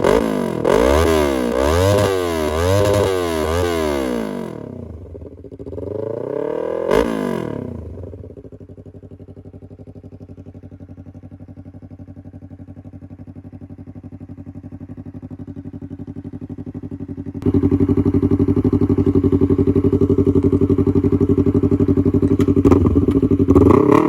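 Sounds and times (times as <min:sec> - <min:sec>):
motorcycle engine revving: 0:00.0 - 0:24.0
engine crack: 0:17.4 - 0:24.0.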